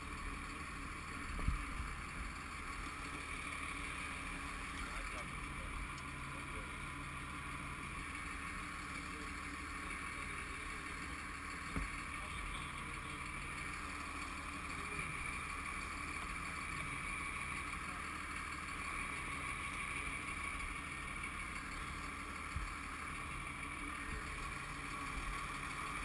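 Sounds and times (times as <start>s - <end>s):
fire truck engine droning: 0.0s - 26.0s.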